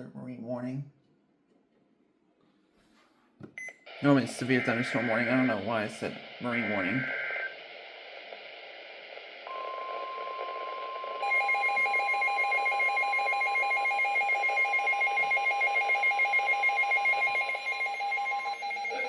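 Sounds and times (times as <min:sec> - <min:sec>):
static hiss: 0:03.9 - 0:11.2.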